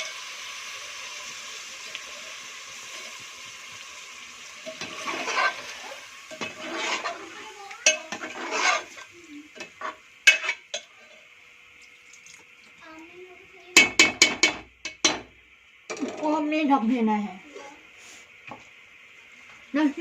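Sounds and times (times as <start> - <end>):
chicken sizzling in a pan: 0.0 - 20.0
spoon clanking against pan: 4.6 - 7.2, 7.8 - 11.2, 13.8 - 16.2
metal spoon scraping a pan: 4.6 - 11.3.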